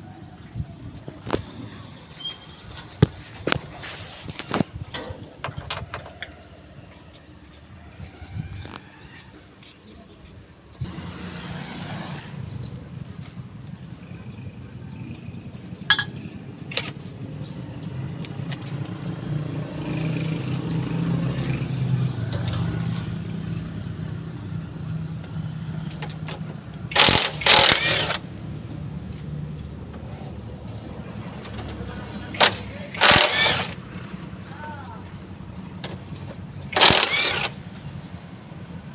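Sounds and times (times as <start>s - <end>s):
vehicle engine humming: 0.0s - 38.9s
sharp metallic clicks: 15.9s - 17.1s, 25.9s - 28.3s, 32.3s - 33.8s, 35.8s - 37.9s
harsh noisy burst: 32.4s - 33.8s.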